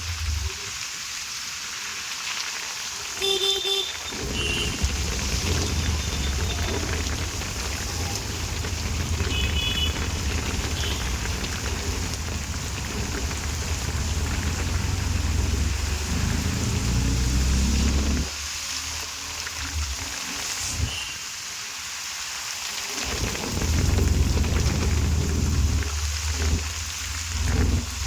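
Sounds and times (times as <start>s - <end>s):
heavy rain on hard surfaces: 0.0s - 28.0s
strong low rumble: 4.1s - 18.3s, 23.1s - 28.0s
low droning hum: 4.2s - 18.3s.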